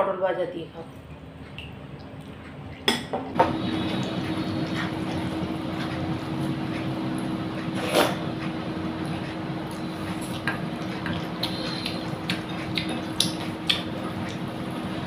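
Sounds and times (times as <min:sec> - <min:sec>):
wet squishing of food: 0:08.9 - 0:15.0.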